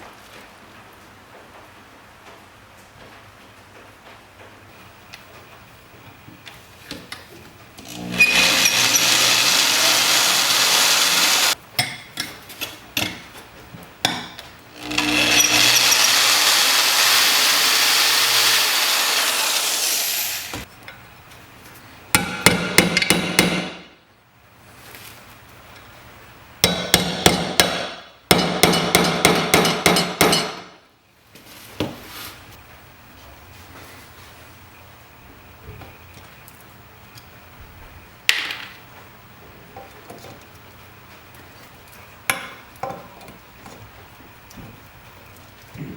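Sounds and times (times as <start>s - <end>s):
steady abrasive tool noise: 7.8s - 11.6s, 14.6s - 20.7s.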